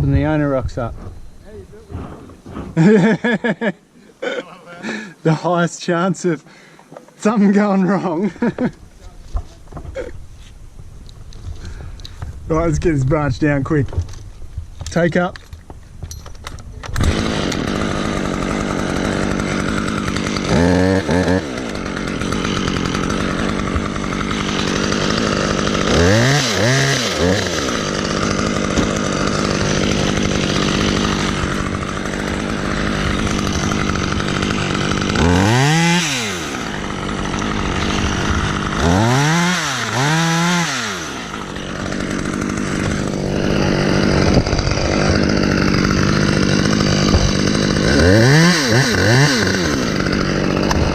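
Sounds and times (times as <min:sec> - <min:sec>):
chainsaw cutting a branch: 0:16.8 - 0:50.9.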